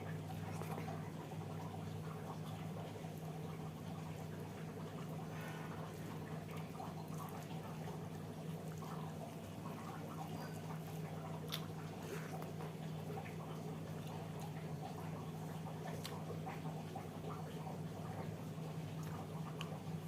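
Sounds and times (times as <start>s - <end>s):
wet chewing: 10.8s - 12.6s, 15.8s - 16.6s.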